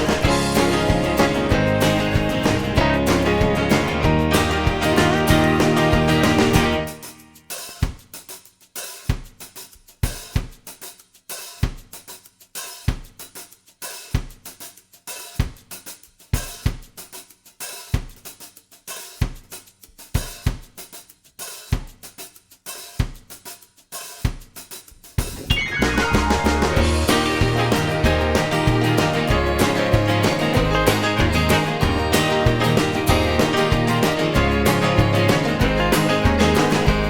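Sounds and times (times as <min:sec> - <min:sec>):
bass drum: 0:00.0 - 0:06.9, 0:25.2 - 0:37.0
cymbals: 0:00.0 - 0:37.0
snare drum: 0:00.0 - 0:37.0.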